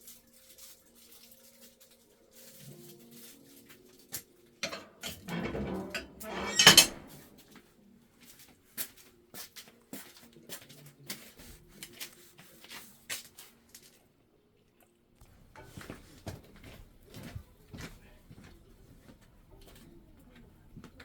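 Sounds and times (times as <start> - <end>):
objects clicking and knocking: 4.6 - 7.2.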